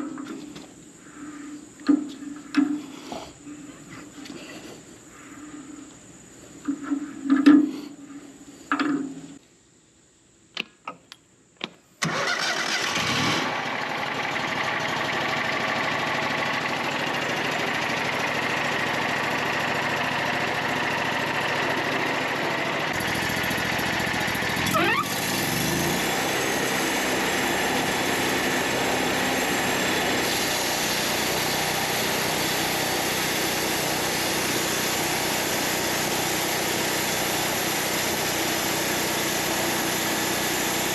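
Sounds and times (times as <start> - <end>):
sawmill engine running: 12.1 - 40.9.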